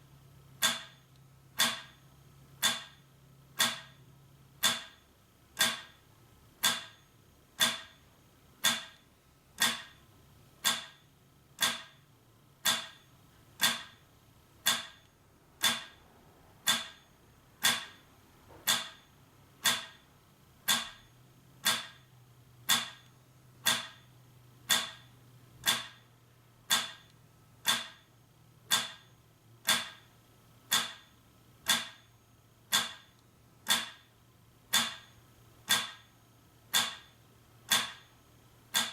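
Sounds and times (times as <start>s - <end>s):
metronome ticking: 5.6s - 6.0s, 7.6s - 8.0s, 8.6s - 9.0s, 12.6s - 13.0s, 14.6s - 16.0s, 16.6s - 18.0s, 19.6s - 20.0s, 20.7s - 22.1s, 22.7s - 26.0s, 26.7s - 28.0s, 28.7s - 29.1s, 29.7s - 30.0s, 30.7s - 31.1s, 31.7s - 32.1s, 32.7s - 34.1s, 34.7s - 35.1s, 35.7s - 36.1s, 36.7s - 37.1s, 37.7s - 38.1s.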